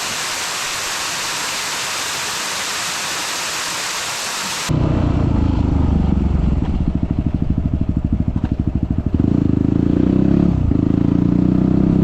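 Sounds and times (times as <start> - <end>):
motorcycle engine idling: 5.9 - 9.2.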